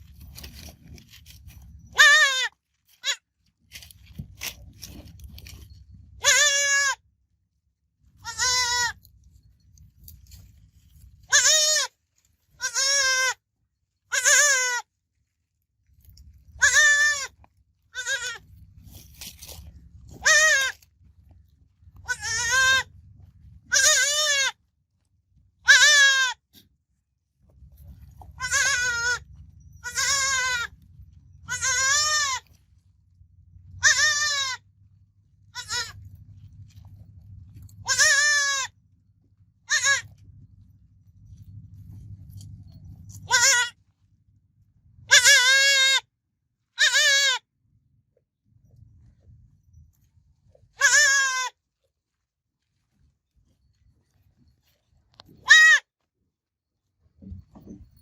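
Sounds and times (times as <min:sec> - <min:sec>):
goat kid bleating: 0:01.9 - 0:03.3, 0:06.2 - 0:07.0, 0:08.2 - 0:09.1, 0:11.2 - 0:13.4, 0:14.1 - 0:14.9, 0:16.6 - 0:18.5, 0:20.2 - 0:20.9, 0:22.0 - 0:22.9, 0:23.7 - 0:24.6, 0:25.6 - 0:26.6, 0:28.2 - 0:30.8, 0:31.4 - 0:32.6, 0:33.8 - 0:34.7, 0:35.4 - 0:36.0, 0:37.8 - 0:38.8, 0:39.6 - 0:40.2, 0:43.2 - 0:43.8, 0:45.1 - 0:46.1, 0:46.8 - 0:47.5, 0:50.7 - 0:51.7, 0:55.4 - 0:55.9.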